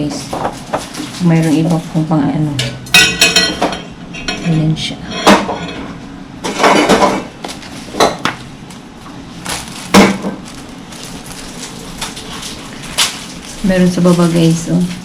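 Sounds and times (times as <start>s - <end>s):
microwave parts knocking and clinking: 2.6s - 4.6s, 5.2s - 8.4s.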